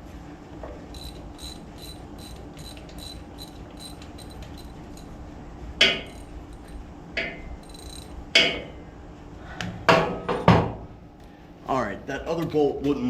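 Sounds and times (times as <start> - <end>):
metal clanks of tools and bolts: 5.8 - 8.8.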